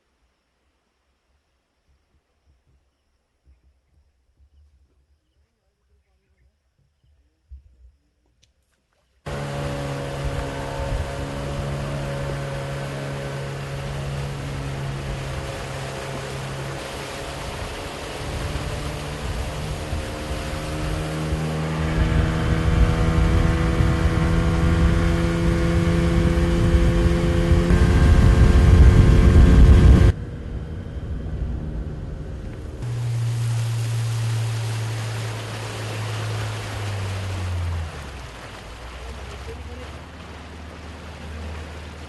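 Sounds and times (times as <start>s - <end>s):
engine running hard: 9.3s - 42.0s
low steady engine note: 9.3s - 42.0s.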